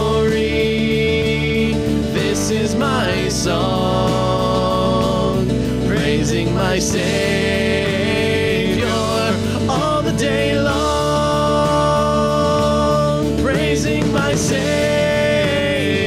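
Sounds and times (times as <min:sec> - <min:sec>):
praise band playing a hymn: 0:00.0 - 0:16.0
voices singing: 0:00.0 - 0:16.0.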